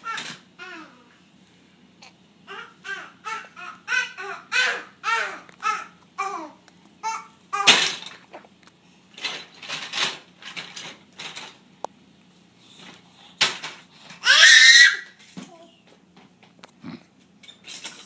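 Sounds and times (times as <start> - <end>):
baby babbling: 0.0 - 1.2, 2.0 - 7.8.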